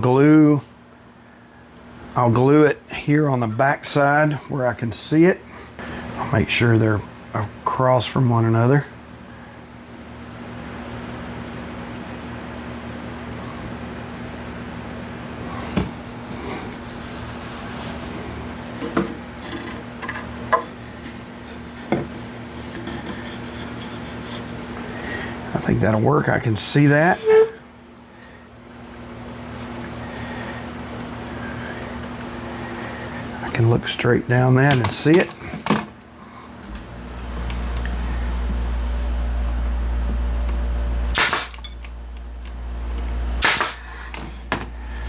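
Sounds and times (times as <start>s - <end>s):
steady low hum: 0.0s - 45.0s
machine humming: 36.2s - 45.0s.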